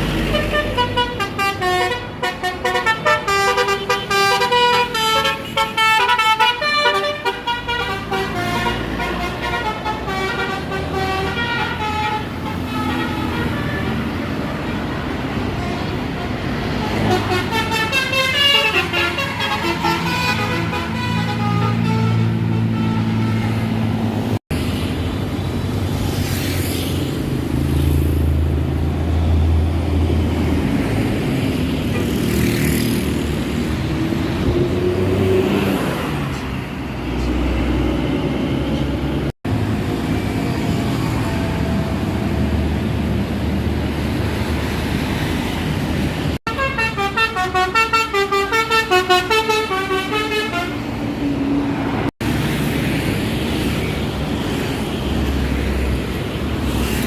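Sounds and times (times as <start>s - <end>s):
bus engines and traffic: 0.0s - 57.0s
bus horn warbling tune: 0.2s - 24.0s, 46.4s - 51.0s.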